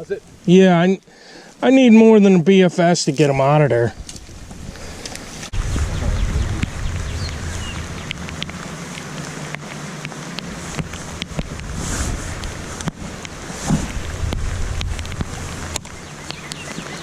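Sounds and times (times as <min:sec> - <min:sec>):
wind buffeting microphone: 0:03.9 - 0:17.0.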